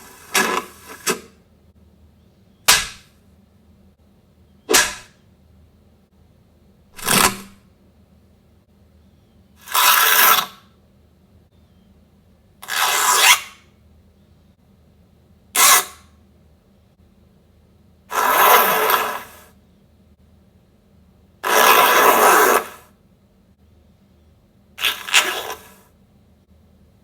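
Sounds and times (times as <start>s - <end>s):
rough scraping noises: 7.0s - 7.6s, 21.4s - 22.9s.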